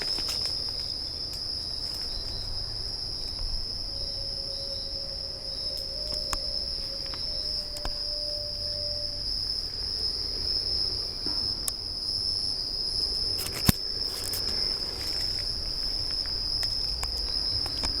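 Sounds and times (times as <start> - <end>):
insects buzzing: 0.0 - 18.0.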